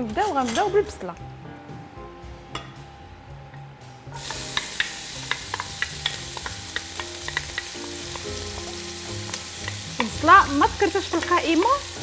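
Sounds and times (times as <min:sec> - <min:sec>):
oil popping and crackling: 0:04.2 - 0:12.0
onion sizzling in hot oil: 0:04.2 - 0:12.0.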